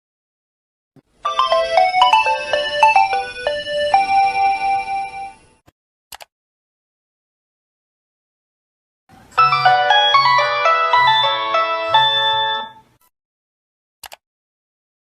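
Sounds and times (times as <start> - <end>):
mobile phone ringtone: 1.2 - 5.5, 9.4 - 12.8.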